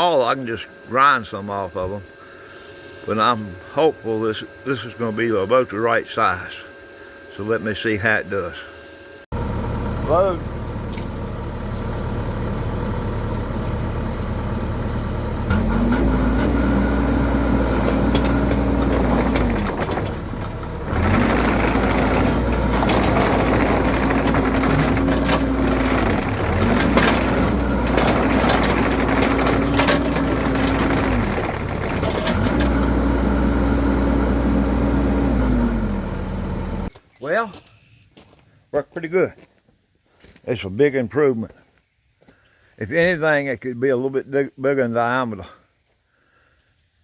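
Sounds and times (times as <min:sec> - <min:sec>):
hydraulic whine: 0:00.0 - 0:36.9
excavator engine running: 0:09.3 - 0:36.9
tracks rattling and clanking: 0:10.0 - 0:36.9.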